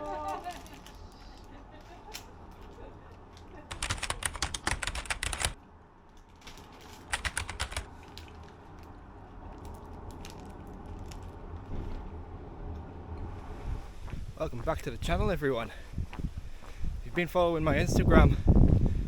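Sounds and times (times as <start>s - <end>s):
fast sharp clicks: 3.7s - 5.6s, 7.0s - 8.3s.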